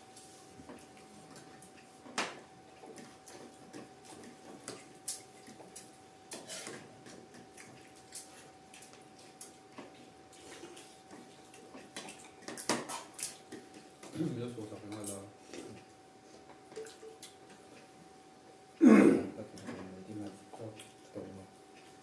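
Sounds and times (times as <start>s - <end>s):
utensils clicking and tapping: 16.7s - 17.6s.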